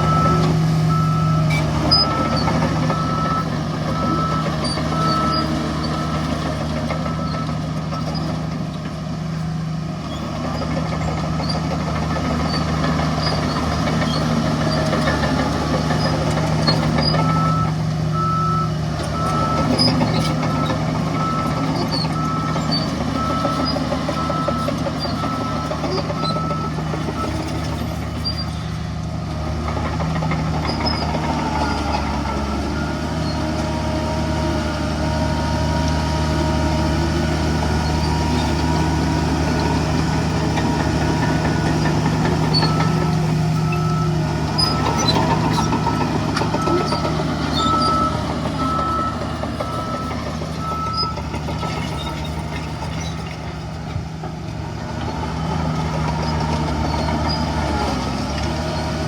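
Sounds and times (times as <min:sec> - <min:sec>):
reversing alarm beeping: 0:00.0 - 0:08.3, 0:16.7 - 0:27.6, 0:41.0 - 0:51.9
diesel machinery running: 0:00.0 - 0:59.0.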